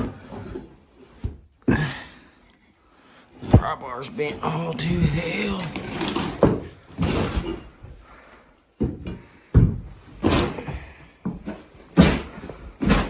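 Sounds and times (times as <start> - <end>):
carpet tearing: 11.9 - 13.0.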